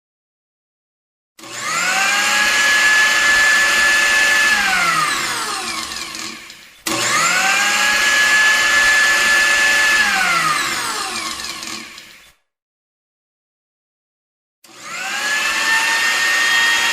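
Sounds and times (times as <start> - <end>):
blender motor whining: 1.4 - 12.4, 14.6 - 16.9.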